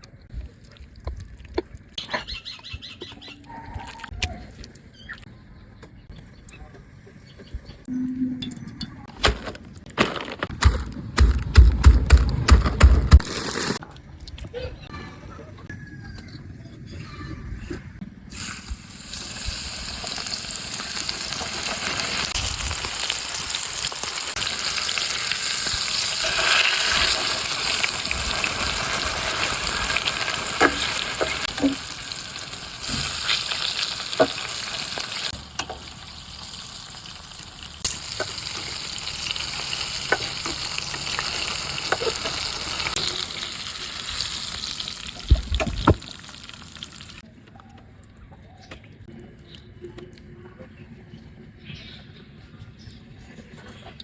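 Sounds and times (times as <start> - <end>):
chicken sizzling in hot oil: 18.3 - 47.2.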